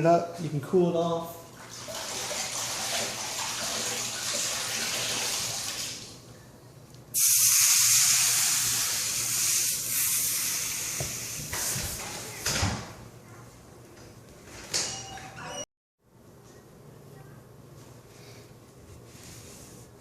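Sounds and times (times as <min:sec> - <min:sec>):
hot pipe steam hissing: 0:07.2 - 0:11.6.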